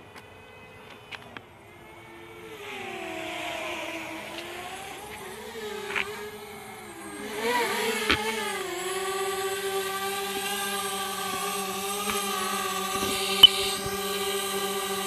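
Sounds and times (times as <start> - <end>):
drone propellers whining: 0.0 - 15.0
sharp clicks: 10.4 - 14.2.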